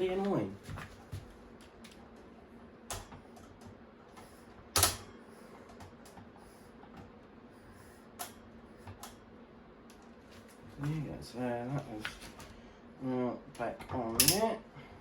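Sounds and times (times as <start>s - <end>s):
fan parts clicking and knocking: 0.0s - 7.3s, 13.5s - 14.6s.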